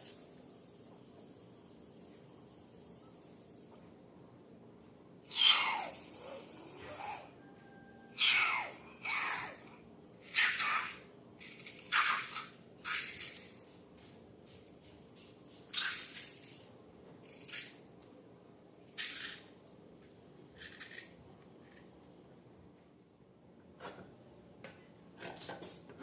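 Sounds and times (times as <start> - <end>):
slime squelching: 10.2 - 13.7, 14.8 - 17.8.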